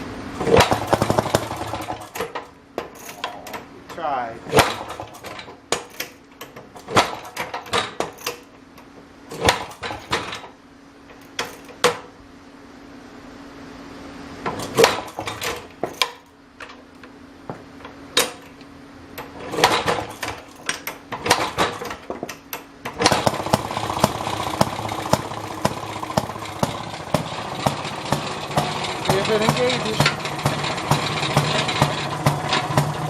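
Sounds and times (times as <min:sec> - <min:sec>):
gas engine running: 0:00.4 - 0:02.3, 0:23.0 - 0:33.0
engine knocks while starting: 0:00.4 - 0:02.4, 0:04.5 - 0:05.6, 0:19.5 - 0:20.5, 0:22.9 - 0:33.0.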